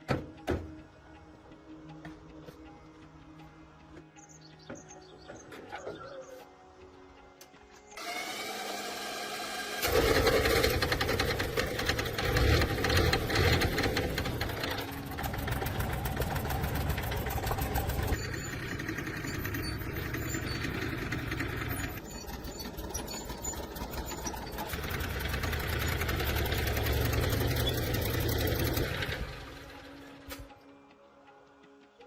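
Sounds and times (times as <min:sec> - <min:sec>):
tractor engine knocking: 0:09.8 - 0:29.8.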